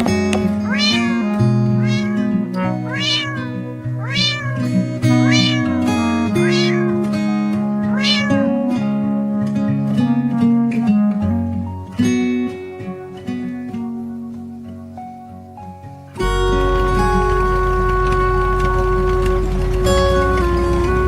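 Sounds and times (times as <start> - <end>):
background guitar music: 0.0 - 21.0
cat meowing: 0.6 - 7.0, 7.8 - 8.6.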